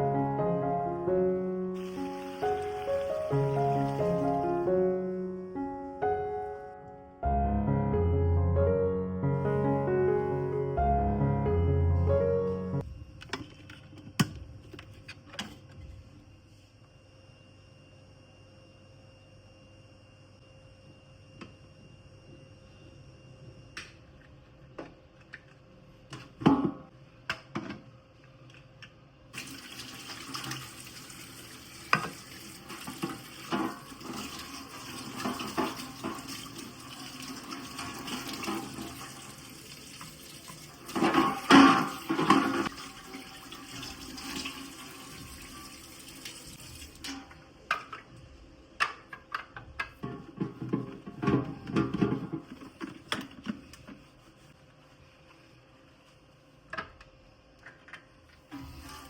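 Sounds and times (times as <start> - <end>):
tap running into sink: 31.8 - 39.3.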